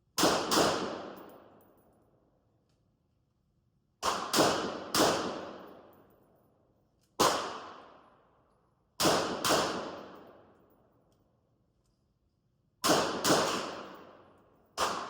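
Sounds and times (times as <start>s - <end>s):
gunshots echoing indoors: 0.1s - 1.7s, 4.0s - 6.2s, 7.2s - 10.6s, 12.8s - 15.0s.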